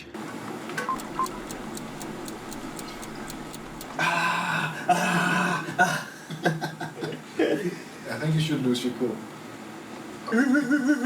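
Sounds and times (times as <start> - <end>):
clock ticking: 0.9 - 4.0.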